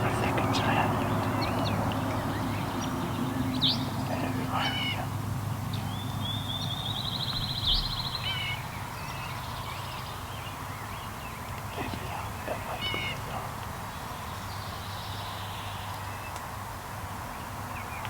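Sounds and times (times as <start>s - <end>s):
steady low hum: 0.0s - 6.0s
small birds chirping: 0.0s - 16.4s.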